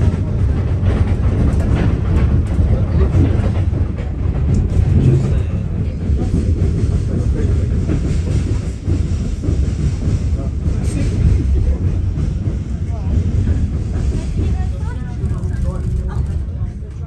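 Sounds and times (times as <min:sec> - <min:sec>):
train rumbling: 0:00.0 - 0:17.0.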